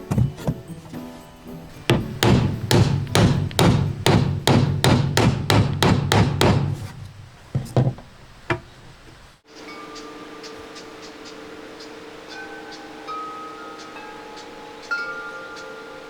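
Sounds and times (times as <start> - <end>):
hammer blows on wood: 1.8 - 7.4.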